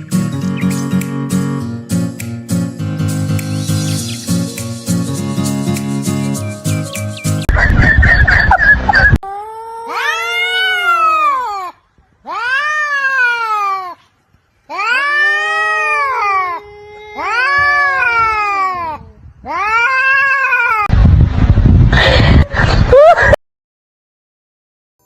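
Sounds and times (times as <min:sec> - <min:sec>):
cat meowing: 0:09.9 - 0:11.4.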